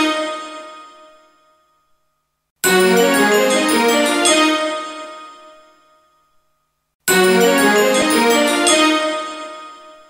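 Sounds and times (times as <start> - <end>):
jingle final chord ringing: 2.6 - 4.6, 7.1 - 9.2.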